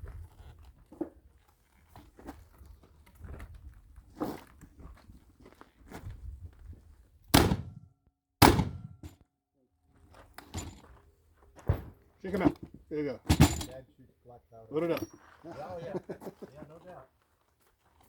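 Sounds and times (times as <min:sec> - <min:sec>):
gunshots: 0:07.4 - 0:07.8, 0:08.4 - 0:09.1
handling knocks and shuffling: 0:10.2 - 0:13.8.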